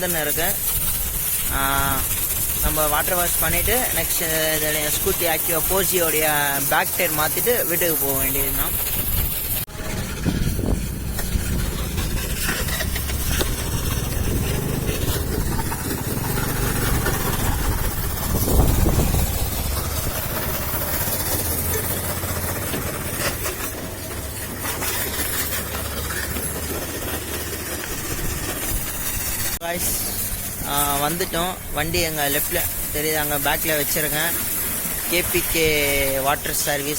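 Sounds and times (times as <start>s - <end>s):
scooter engine humming: 8.7s - 30.6s.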